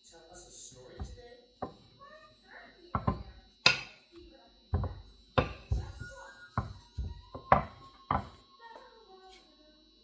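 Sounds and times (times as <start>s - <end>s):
objects knocking on a counter: 1.0s - 1.8s, 3.0s - 4.0s, 4.7s - 8.4s.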